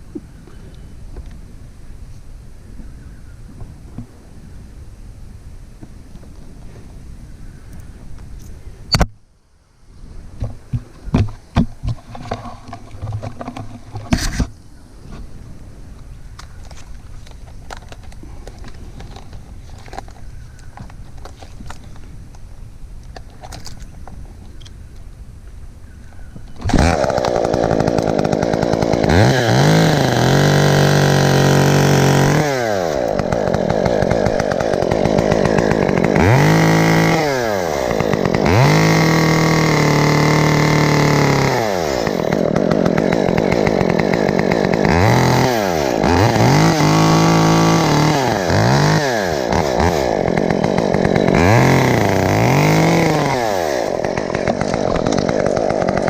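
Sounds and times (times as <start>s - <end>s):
saw engine revving: 26.7s - 56.0s.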